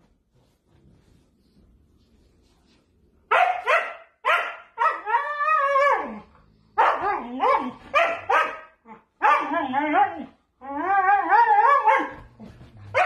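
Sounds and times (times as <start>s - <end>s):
dog barking: 3.3s - 5.1s, 6.8s - 9.7s, 11.8s - 12.1s.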